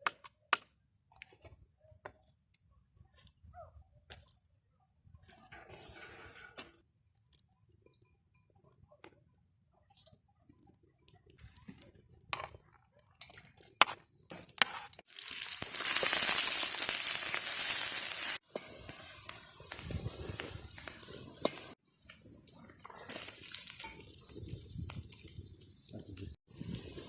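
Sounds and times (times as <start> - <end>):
food sizzling in hot oil: 14.5 - 27.0.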